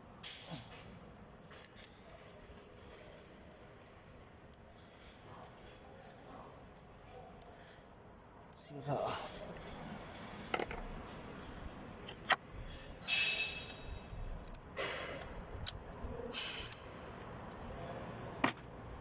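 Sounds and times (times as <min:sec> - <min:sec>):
metal tools clinking and scraping: 0:12.6 - 0:14.2, 0:18.4 - 0:18.7.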